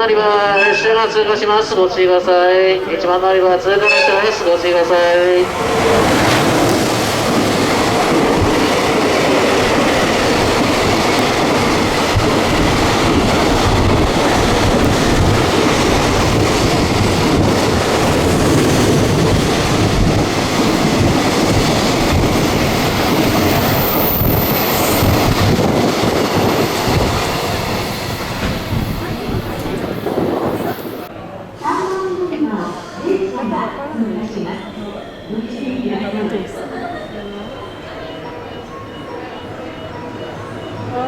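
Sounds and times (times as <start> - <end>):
train passing at speed: 0.0 - 41.0.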